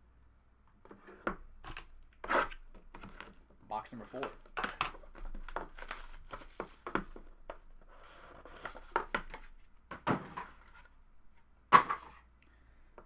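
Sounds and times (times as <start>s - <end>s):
plastic wrap tearing and crinkling: 4.1s - 6.9s.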